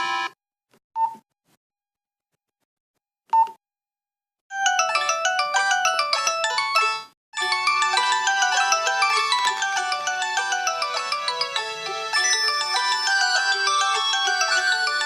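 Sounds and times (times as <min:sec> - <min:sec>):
fast bell-like ringtone melody: 0:04.5 - 0:15.0.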